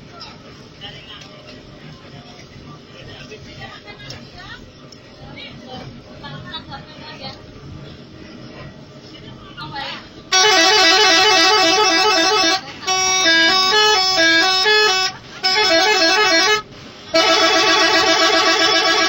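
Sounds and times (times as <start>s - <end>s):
musical bus horn melodies: 10.3s - 19.0s.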